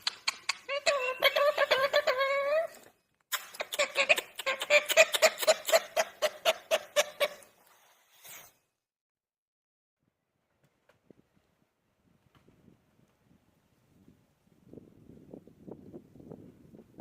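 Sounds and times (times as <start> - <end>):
parrot calling: 0.0 - 2.7, 3.4 - 7.5.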